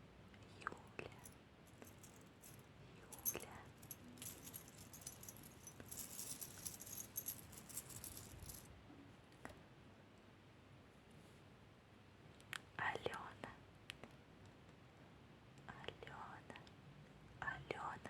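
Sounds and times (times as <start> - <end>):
jewelry jingling: 1.1 - 8.7.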